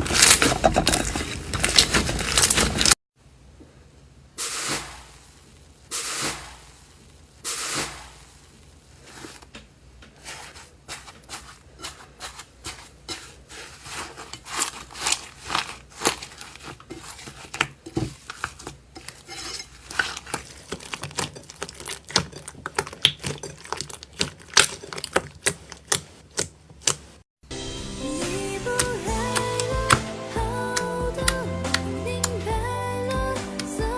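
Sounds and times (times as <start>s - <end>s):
small crackles and pops: 4.6s - 10.2s, 14.3s - 27.2s
slime squished by hand: 10.2s - 19.2s, 19.8s - 27.2s.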